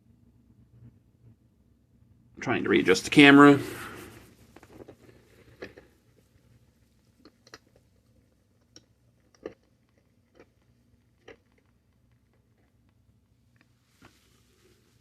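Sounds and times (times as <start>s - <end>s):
faint small clicks and crackles: 4.4s - 14.3s.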